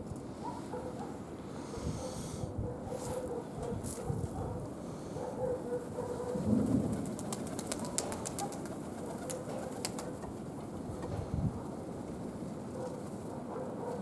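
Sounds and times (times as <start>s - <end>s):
pigeons cooing: 5.2s - 10.5s.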